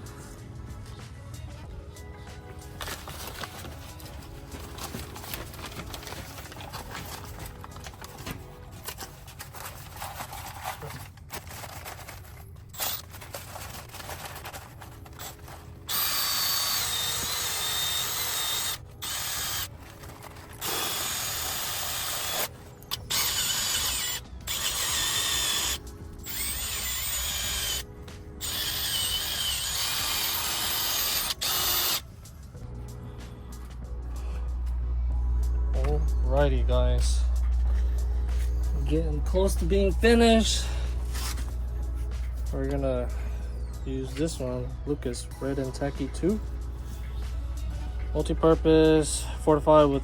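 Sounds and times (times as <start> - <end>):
power tool whining: 12.7 - 13.1, 15.1 - 32.1.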